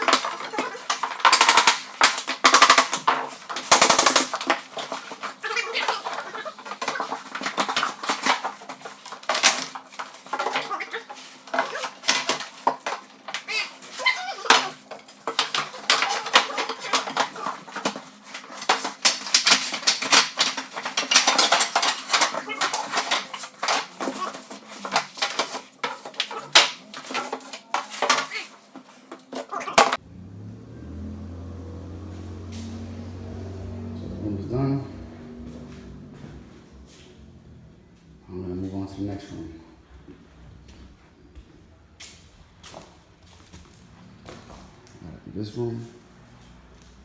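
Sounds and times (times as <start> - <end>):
flooring boards clattering: 0.0 - 30.0.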